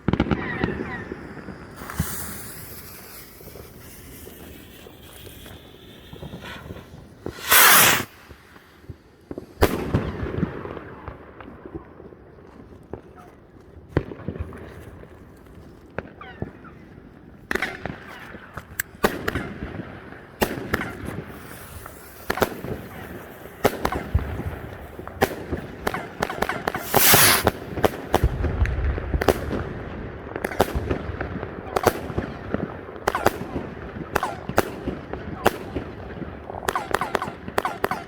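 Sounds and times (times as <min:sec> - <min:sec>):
fireworks bangs and cracks: 0:00.0 - 0:11.5, 0:17.5 - 0:38.0
rushing firework burst: 0:00.6 - 0:10.2, 0:20.4 - 0:25.0, 0:26.6 - 0:27.9.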